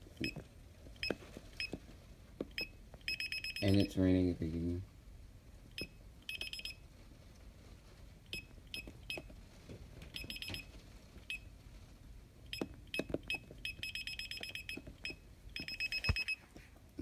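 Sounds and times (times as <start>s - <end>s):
alarm keypad beeping: 2.5s - 3.9s, 5.8s - 6.8s, 10.2s - 10.7s, 12.5s - 16.4s.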